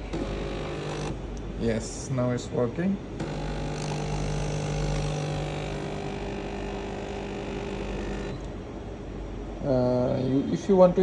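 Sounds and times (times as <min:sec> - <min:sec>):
espresso machine pump humming: 0:00.0 - 0:02.0, 0:03.1 - 0:08.8.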